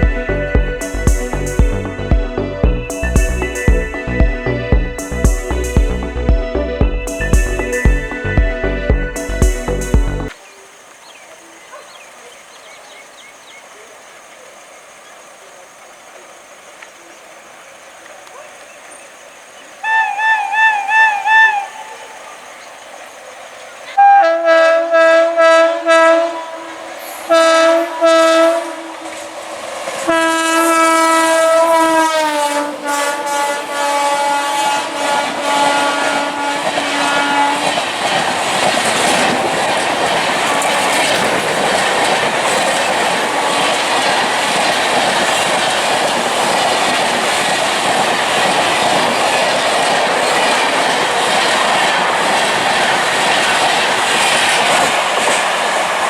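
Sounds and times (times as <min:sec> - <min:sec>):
train rumble: 0:00.0 - 0:10.4, 0:16.3 - 0:56.0
locomotive horn: 0:19.8 - 0:22.3, 0:24.0 - 0:29.4, 0:30.0 - 0:37.9, 0:40.4 - 0:41.4
wheels clickety-clack: 0:36.5 - 0:56.0.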